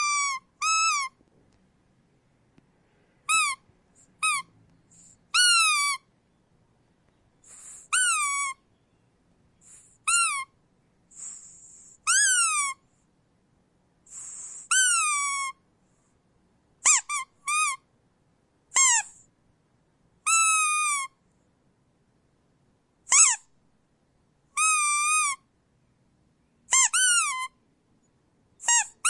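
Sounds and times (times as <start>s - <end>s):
rubber squeak toy squealing: 0.0s - 1.2s, 3.2s - 6.1s, 7.4s - 8.6s, 9.6s - 10.6s, 11.2s - 12.8s, 14.1s - 15.6s, 16.8s - 17.9s, 18.7s - 19.2s, 20.2s - 21.2s, 23.0s - 23.5s, 24.6s - 25.5s, 26.7s - 27.6s, 28.6s - 29.0s.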